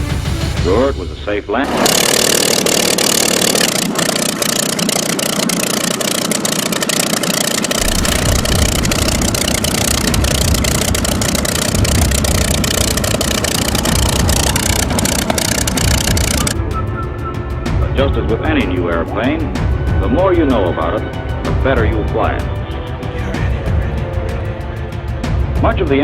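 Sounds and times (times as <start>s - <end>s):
film soundtrack crackle: 1.6s - 16.6s
aircraft piston engine running: 1.6s - 26.0s.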